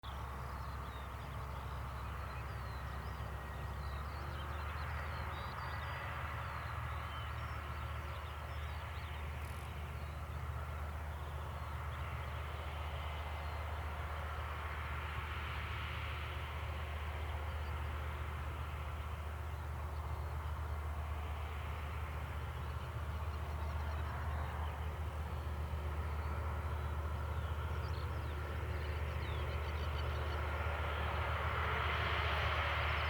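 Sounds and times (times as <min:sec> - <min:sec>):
diesel locomotives droning: 0:00.0 - 0:33.0.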